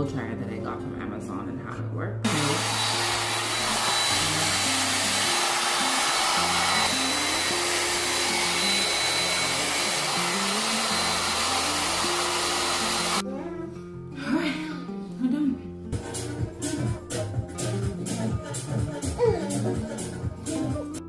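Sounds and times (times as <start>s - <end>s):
blow dryer rushing hiss: 2.3s - 13.2s.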